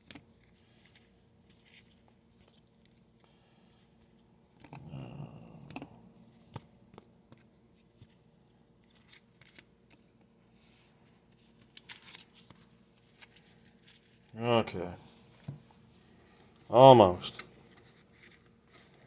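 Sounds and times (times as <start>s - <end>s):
trading cards rustling: 6.4s - 15.4s.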